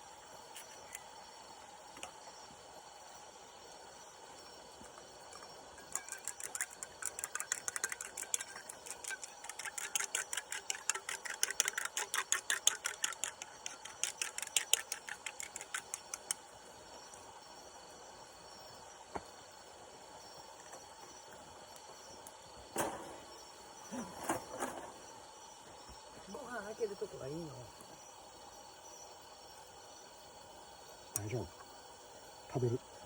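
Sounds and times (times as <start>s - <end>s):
chopsticks beating egg in bowl: 5.8s - 16.4s.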